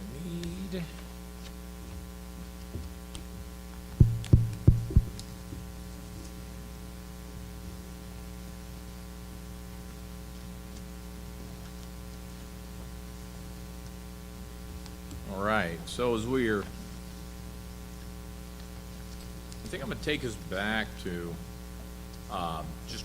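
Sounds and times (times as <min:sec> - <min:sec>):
electrical mains hum: 0:00.0 - 0:23.0
quick knocks: 0:04.0 - 0:05.2.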